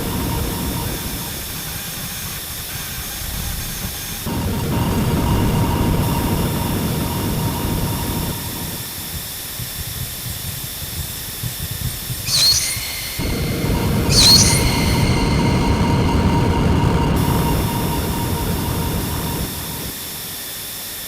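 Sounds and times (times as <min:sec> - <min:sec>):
steady hiss: 0:00.0 - 0:21.0
thin held tones: 0:12.2 - 0:20.0
short high squeal: 0:12.3 - 0:19.9.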